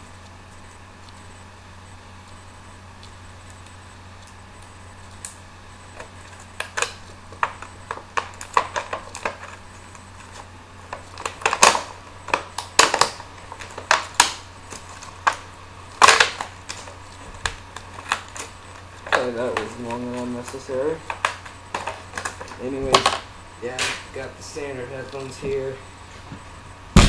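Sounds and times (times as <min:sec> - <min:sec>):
packaging clicking and crackling: 0:06.0 - 0:24.0.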